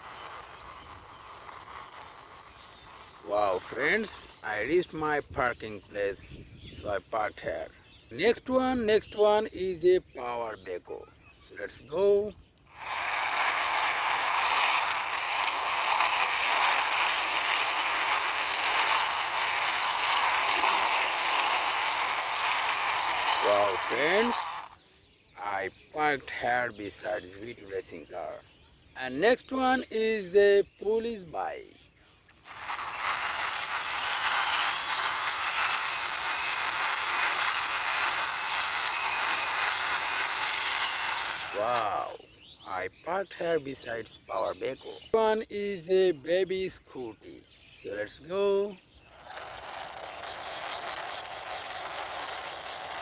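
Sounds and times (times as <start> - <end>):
toy wheels rattling whir: 0.0 - 5.4, 12.7 - 24.8, 25.4 - 28.3, 32.4 - 42.1, 48.1 - 53.0.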